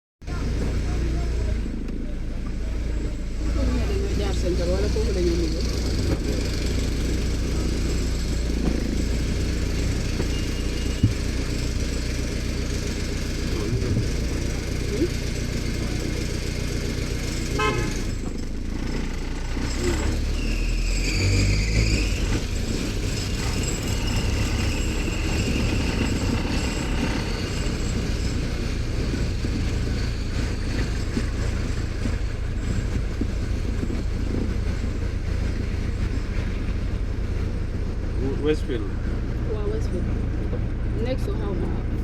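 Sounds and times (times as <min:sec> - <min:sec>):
engine and road rumble: 0:00.2 - 0:42.0
vehicle horns tooting: 0:10.0 - 0:11.8, 0:17.4 - 0:18.3.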